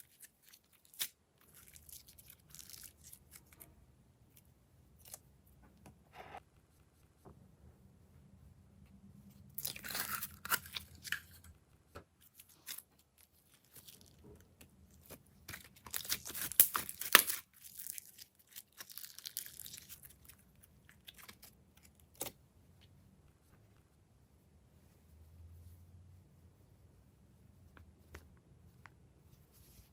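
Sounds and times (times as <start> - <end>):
slime crackling and crunching: 0.0 - 3.6, 9.6 - 11.4, 15.0 - 22.2.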